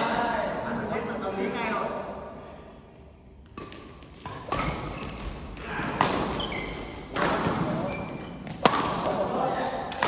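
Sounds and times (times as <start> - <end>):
ball hits: 3.6 - 10.0.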